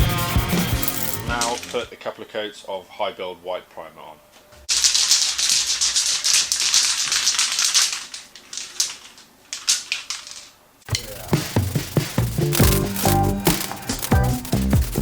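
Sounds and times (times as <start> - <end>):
music: 0.0 - 1.8, 10.9 - 15.0
spray gun hissing: 10.9 - 15.0.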